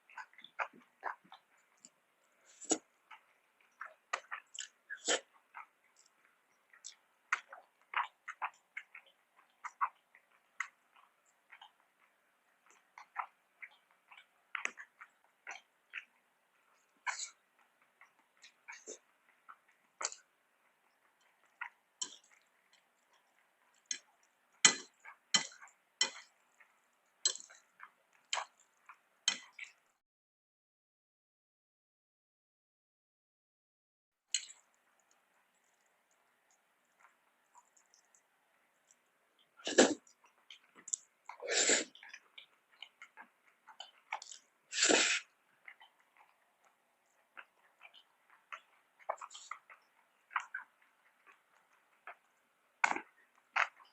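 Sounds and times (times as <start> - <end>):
person eating clicks and smacks: 0.0 - 2.0, 2.6 - 29.8, 34.4 - 53.9
loud noisy eating bursts: 44.7 - 45.3.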